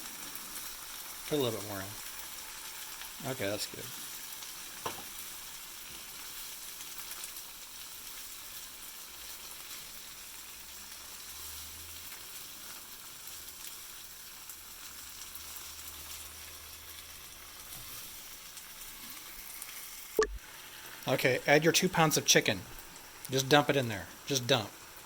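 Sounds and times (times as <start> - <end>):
vegetables sizzling in a pan: 0.0 - 25.0.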